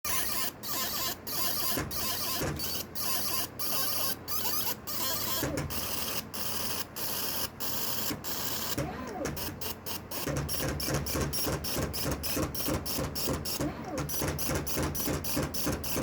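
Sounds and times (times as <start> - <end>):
small machine hissing rhythmically: 0.1 - 8.8.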